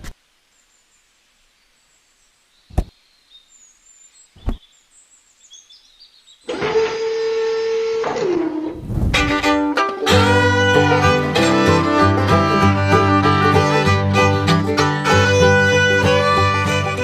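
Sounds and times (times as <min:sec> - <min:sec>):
string music with violins: 0:06.5 - 0:17.0
held tone and sweep: 0:08.5 - 0:09.6.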